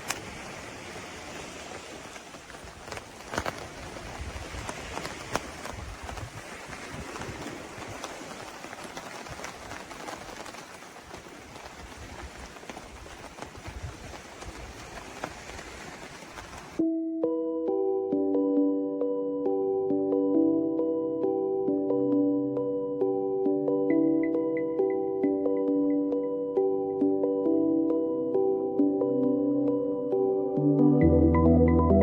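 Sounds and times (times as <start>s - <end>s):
sharp raindrop hits: 0.0s - 16.8s
steady rain falling: 0.0s - 16.8s.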